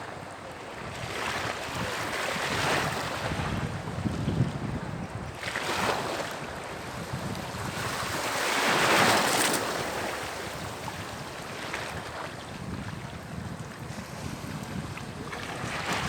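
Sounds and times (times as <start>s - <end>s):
sea waves breaking: 5.4s - 12.9s.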